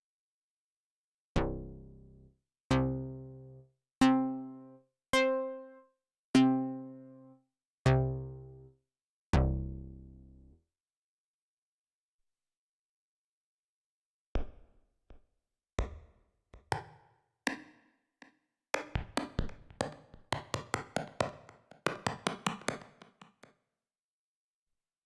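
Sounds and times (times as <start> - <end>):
percussive synthesizer notes: 15.8 - 17.8, 18.8 - 23.5.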